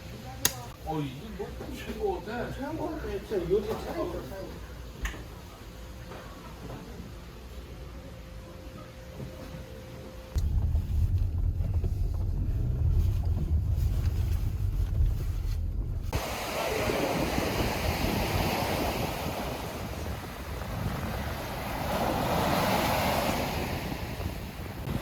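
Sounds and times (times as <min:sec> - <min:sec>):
wind buffeting microphone: 0:10.4 - 0:25.0
sea surf washing ashore: 0:12.9 - 0:25.0.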